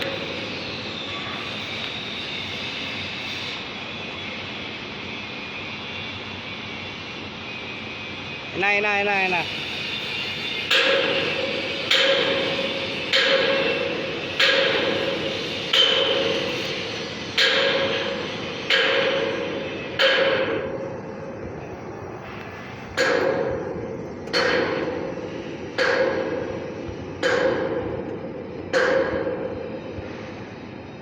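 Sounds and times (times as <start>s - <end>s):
hammer striking ringing metal: 10.7s - 16.8s, 24.3s - 28.1s, 28.7s - 29.5s.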